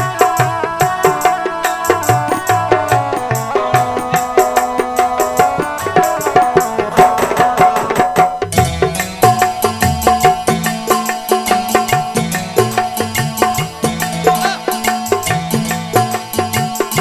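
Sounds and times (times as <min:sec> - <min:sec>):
hand drum and percussion rhythm: 0:00.0 - 0:17.0
sustained instrumental melody: 0:08.4 - 0:17.0.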